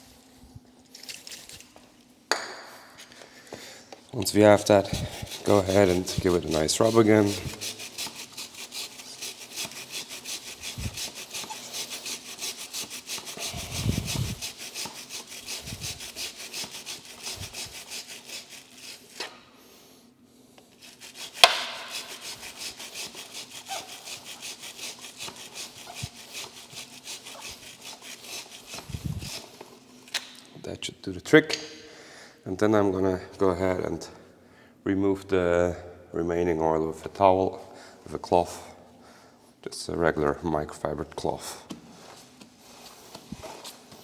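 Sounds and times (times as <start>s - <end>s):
scrubbing motorcycle chain: 4.2s - 19.3s, 20.7s - 29.6s.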